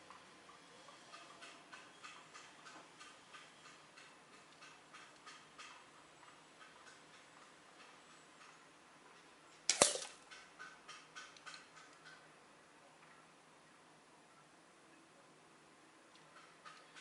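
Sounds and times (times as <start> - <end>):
air rifle shot crack: 9.7 - 10.2.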